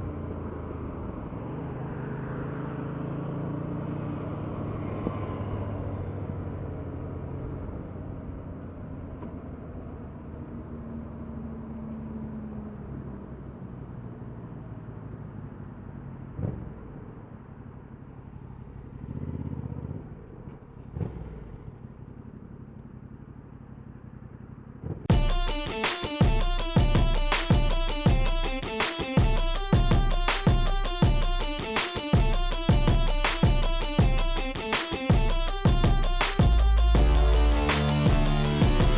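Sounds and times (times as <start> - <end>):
loud electric guitar music: 25.1 - 38.9
motorcycle engine running: 32.2 - 38.9.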